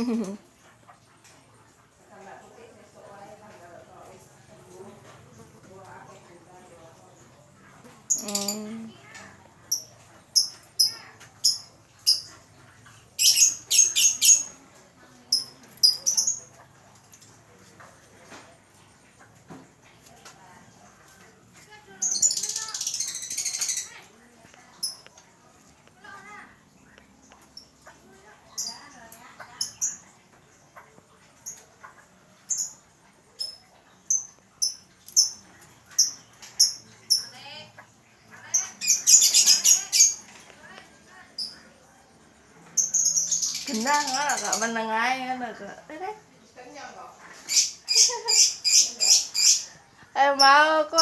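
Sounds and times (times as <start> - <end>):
lovebird chirping: 8.1 - 8.9, 9.7 - 12.5, 13.2 - 14.6, 15.2 - 16.6, 22.0 - 24.0, 32.4 - 37.5, 38.5 - 40.3, 42.8 - 45.0, 47.4 - 51.0.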